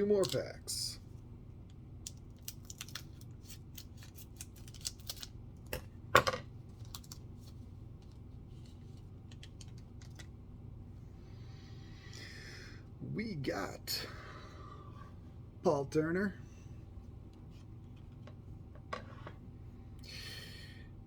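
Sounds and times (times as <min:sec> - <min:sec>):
wrapper tearing and crinkling: 0:02.3 - 0:05.4.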